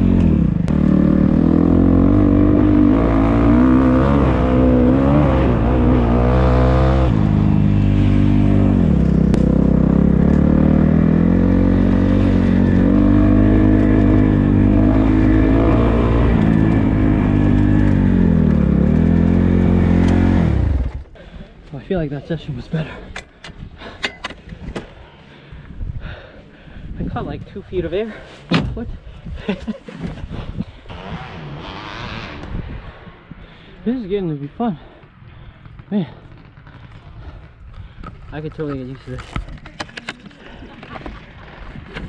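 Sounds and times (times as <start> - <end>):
dirt bike engine revving: 0.0 - 21.0, 30.9 - 32.7.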